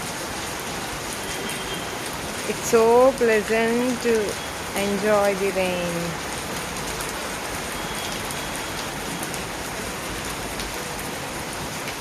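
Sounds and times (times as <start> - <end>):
rain pattering: 0.0 - 12.0.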